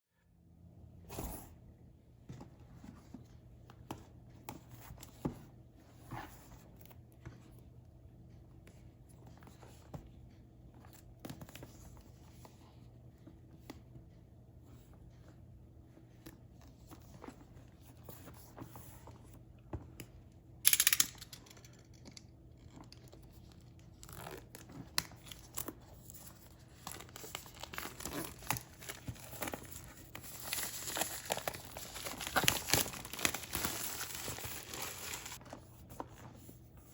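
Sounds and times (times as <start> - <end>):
packaging clicks and rustles: 22.7 - 35.4
packaging tearing and crinkling: 26.9 - 35.4.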